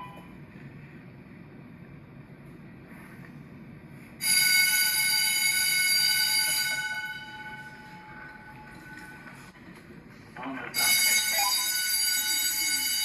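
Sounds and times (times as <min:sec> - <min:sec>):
fire alarm bell ringing: 0:04.2 - 0:09.2, 0:10.8 - 0:13.0.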